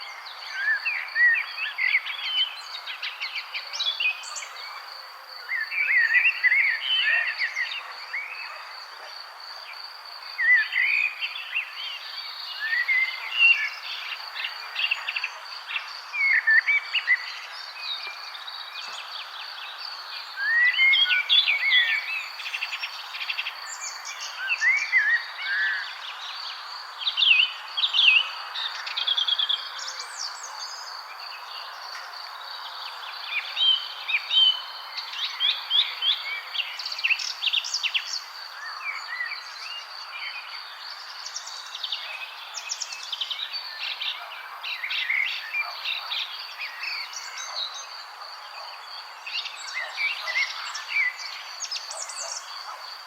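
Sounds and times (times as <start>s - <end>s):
birds chirping and singing: 32.8s - 53.0s.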